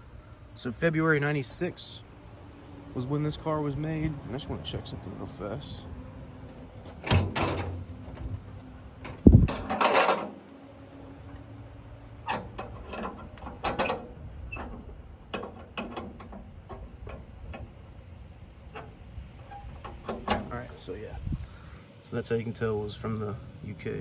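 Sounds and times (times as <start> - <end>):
rustling clatter: 6.4 - 10.5.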